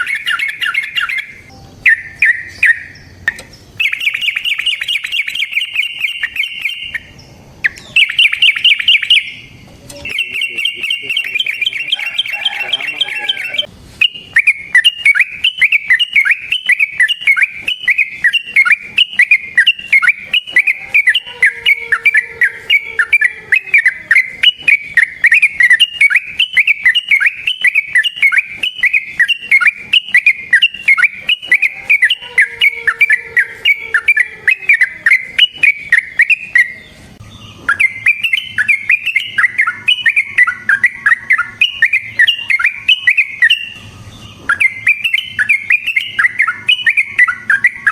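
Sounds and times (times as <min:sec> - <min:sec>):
bulbul singing repeated notes: 0:00.0 - 0:47.9.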